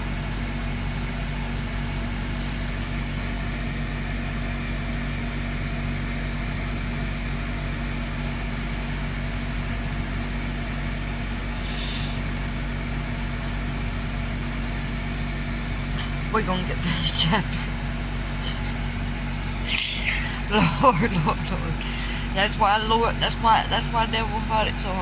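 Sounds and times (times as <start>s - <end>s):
low machine hum: 0.0s - 25.0s
brief hiss: 11.6s - 12.2s.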